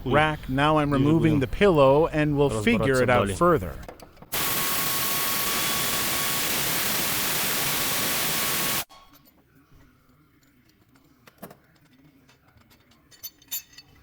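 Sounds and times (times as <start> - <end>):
loud steady hiss: 4.4 - 8.9.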